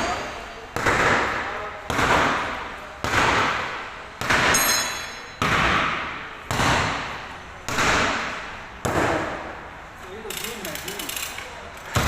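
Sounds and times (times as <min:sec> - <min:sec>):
hammer striking sheet metal: 0:00.8 - 0:09.4.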